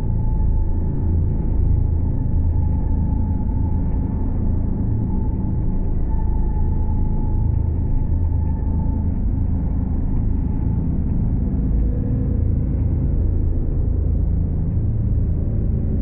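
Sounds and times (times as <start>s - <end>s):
deep engine rumble: 0.0s - 16.0s.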